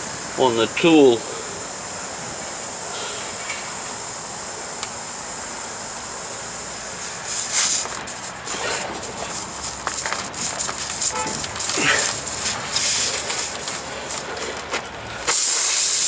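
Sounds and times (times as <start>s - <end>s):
air hissing out of tire: 0.0s - 16.0s
uneven scraping with knocks: 7.5s - 15.7s.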